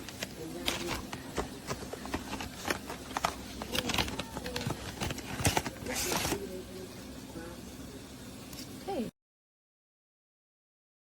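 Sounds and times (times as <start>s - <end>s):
hands handling cardboard packaging: 0.0s - 6.5s.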